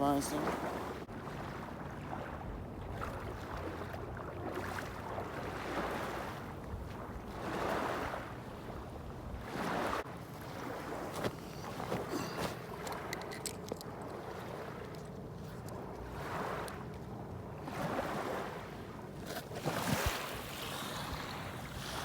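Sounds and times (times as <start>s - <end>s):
small waves washing: 0.0s - 22.0s
wind noise on microphone: 19.6s - 22.0s.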